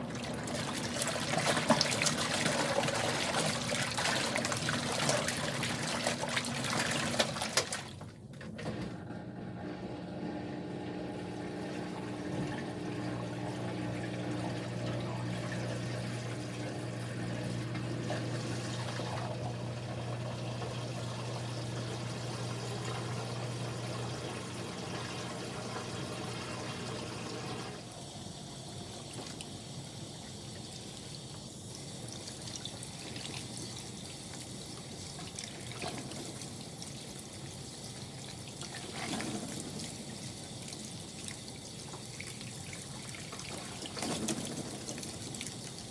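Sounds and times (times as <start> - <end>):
water pouring and splashing: 0.0 - 8.2, 24.1 - 45.9
washing machine motor hum: 0.0 - 45.9
water trickling and dripping: 39.7 - 45.9.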